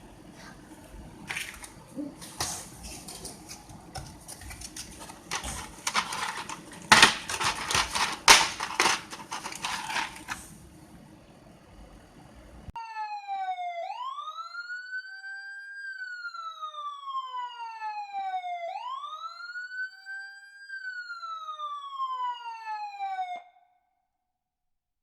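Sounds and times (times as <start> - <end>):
handling rustle: 1.3 - 10.6
siren-like electronic tone: 12.8 - 23.7.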